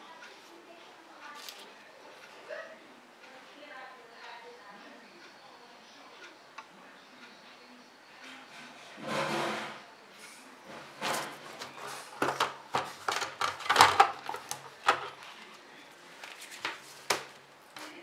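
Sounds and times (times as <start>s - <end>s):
objects clicking and knocking: 11.0s - 15.2s.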